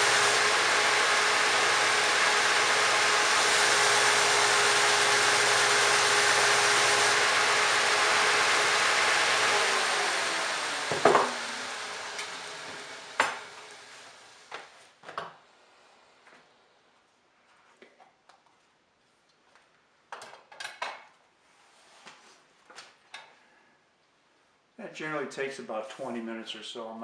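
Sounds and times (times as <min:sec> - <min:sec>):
grinder running: 0:00.0 - 0:14.4.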